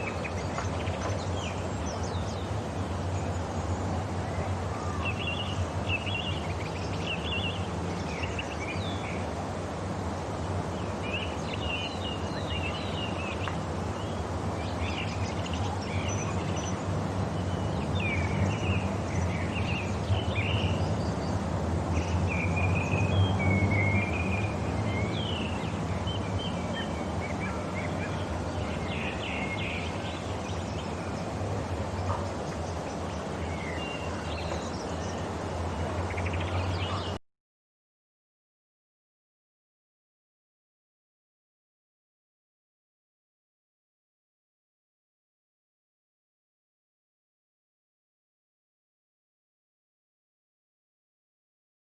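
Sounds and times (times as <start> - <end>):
songbirds chirping and warbling: 0.0 - 37.2.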